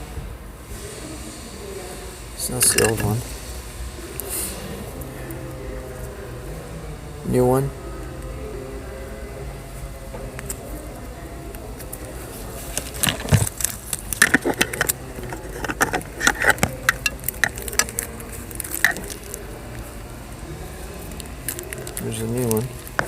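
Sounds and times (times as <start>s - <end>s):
metallic lock clicks and rattles: 2.6s - 3.2s, 13.0s - 18.1s.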